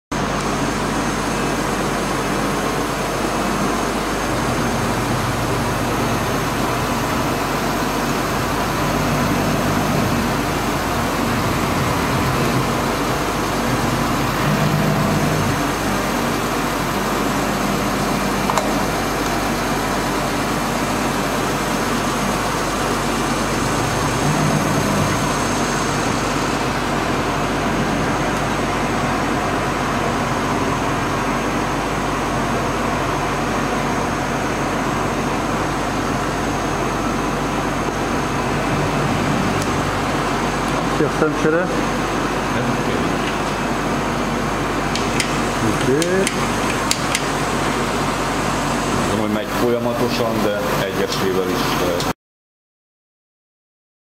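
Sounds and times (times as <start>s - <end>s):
lathe machine humming and whining: 0.2s - 52.1s
sharp click: 46.0s - 47.3s.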